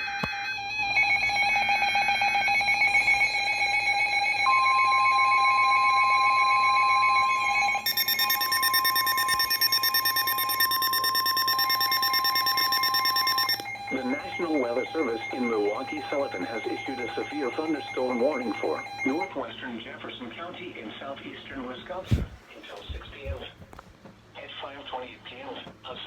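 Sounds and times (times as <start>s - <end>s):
long steady warning tone: 0.6s - 19.6s
electronic alarm beeping: 7.2s - 19.4s
high beeping tones: 7.8s - 19.3s.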